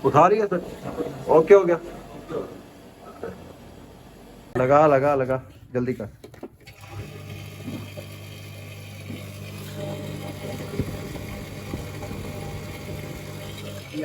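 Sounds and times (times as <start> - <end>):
water pump motor humming: 6.3 - 14.0.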